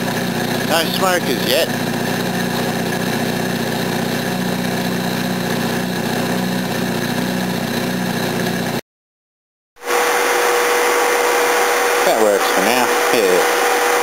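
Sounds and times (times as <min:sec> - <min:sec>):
rotary engine idling: 0:00.0 - 0:08.8.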